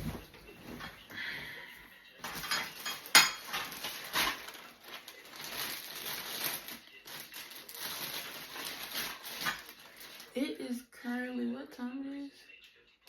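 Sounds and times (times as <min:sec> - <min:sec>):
plastic parts clattering: 0:02.2 - 0:10.3.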